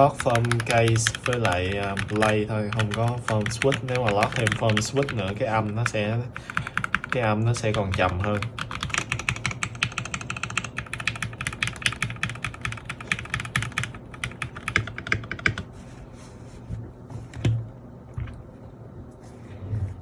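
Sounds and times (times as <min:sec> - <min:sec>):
muffled mechanical keyboard typing: 0:00.0 - 0:15.7.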